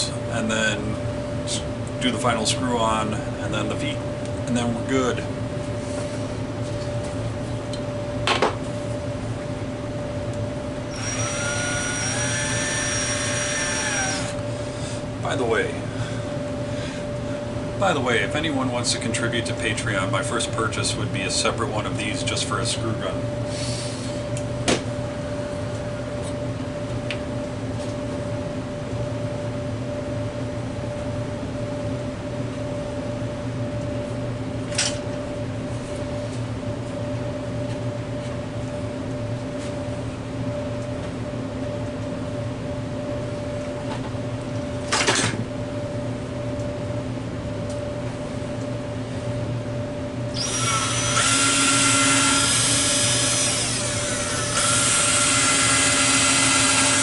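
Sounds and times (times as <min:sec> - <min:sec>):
steady machine hum: 0:00.0 - 0:57.0
power drill drilling into wood: 0:10.9 - 0:14.4, 0:50.4 - 0:57.0.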